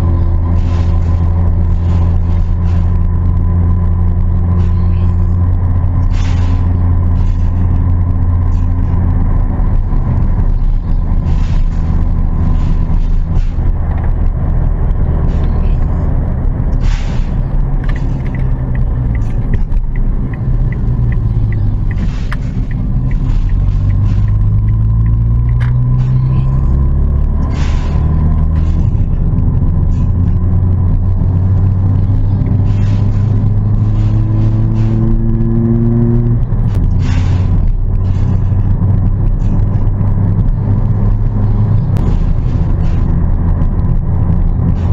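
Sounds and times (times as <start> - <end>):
car engine droning: 0.0 - 44.9.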